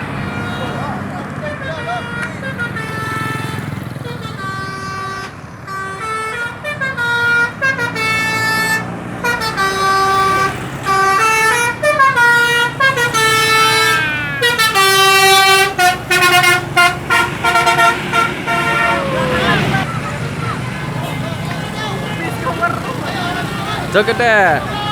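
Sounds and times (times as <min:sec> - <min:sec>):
bus engine: 0:00.0 - 0:24.9
musical air horn playing a tune: 0:01.7 - 0:19.8.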